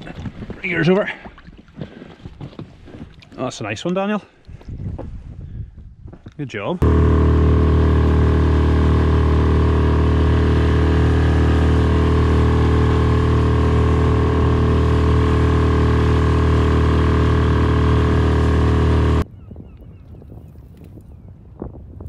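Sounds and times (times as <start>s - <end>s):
outboard motor running: 6.8s - 19.2s.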